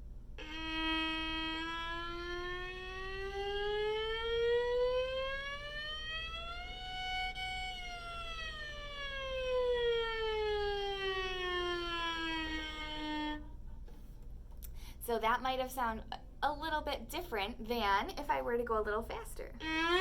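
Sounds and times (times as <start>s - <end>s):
violin note gliding in pitch: 0.4s - 13.5s, 19.6s - 20.0s.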